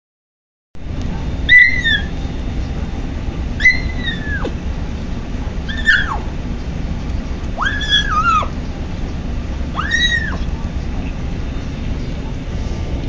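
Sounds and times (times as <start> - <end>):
kitten mewing: 3.6 - 4.6, 5.6 - 6.3, 7.6 - 8.6, 9.7 - 10.6.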